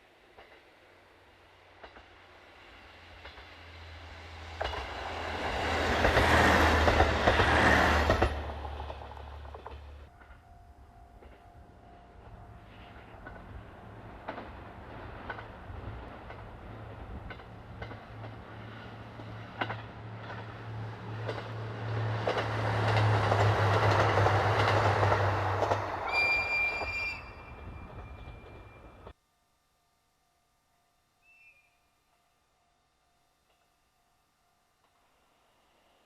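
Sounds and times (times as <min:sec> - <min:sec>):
diesel railcar engine hum: 0:00.0 - 0:29.2
wheels clicking over rail joints: 0:01.7 - 0:02.3, 0:03.2 - 0:03.7, 0:04.4 - 0:10.5, 0:11.1 - 0:29.1
high wheel squeal: 0:26.0 - 0:28.9.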